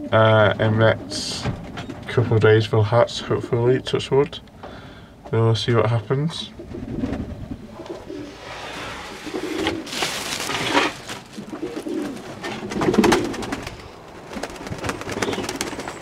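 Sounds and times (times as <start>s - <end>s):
pigeons cooing: 6.4s - 16.0s
rustling noise: 6.7s - 15.0s.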